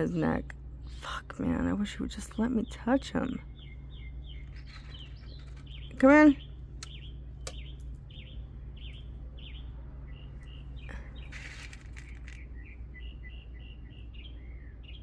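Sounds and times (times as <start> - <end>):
bird chirping: 0.0 - 15.0
steady low hum: 0.0 - 15.0
brief rustling: 4.4 - 6.0, 10.9 - 12.5.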